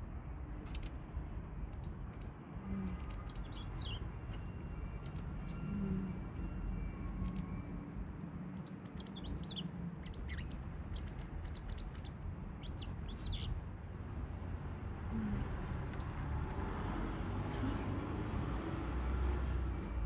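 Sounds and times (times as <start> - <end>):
steady low background rumble: 0.0 - 20.0
bird chirping: 1.7 - 6.1, 6.8 - 7.7, 8.5 - 13.6.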